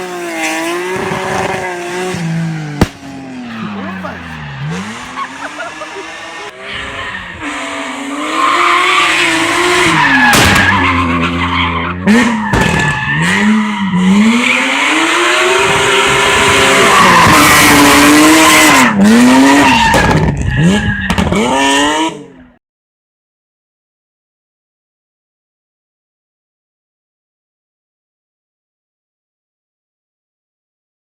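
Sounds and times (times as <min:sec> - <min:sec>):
car engine revving: 0:00.0 - 0:22.2
tyres squealing: 0:03.3 - 0:06.6.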